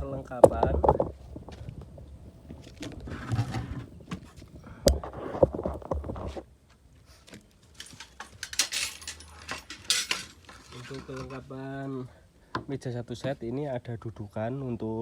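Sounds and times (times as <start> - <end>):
rustling scraping handling noise: 2.5 - 11.7
metal parts clinking: 7.7 - 11.4.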